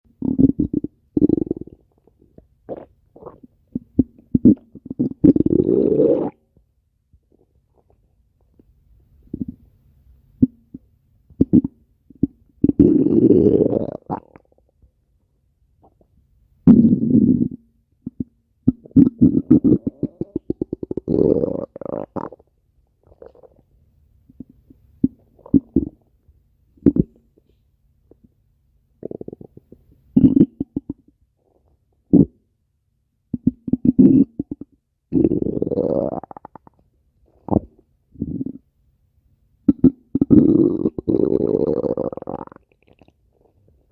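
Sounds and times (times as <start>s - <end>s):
stomach growling: 0.1s - 6.4s, 11.4s - 14.8s, 16.7s - 23.7s, 24.3s - 26.0s, 29.0s - 32.4s, 33.3s - 38.6s, 39.7s - 43.8s.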